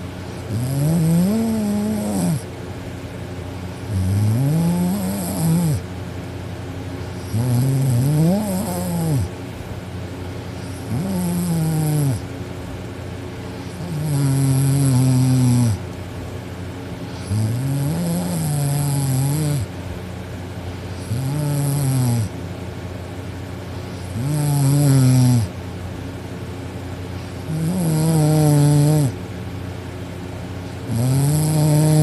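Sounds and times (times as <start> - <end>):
girl snoring: 0.4 - 2.5, 3.8 - 5.8, 7.2 - 9.3, 10.7 - 12.2, 13.6 - 15.8, 17.2 - 19.7, 21.0 - 22.3, 24.0 - 25.5, 27.3 - 29.2, 30.8 - 32.0.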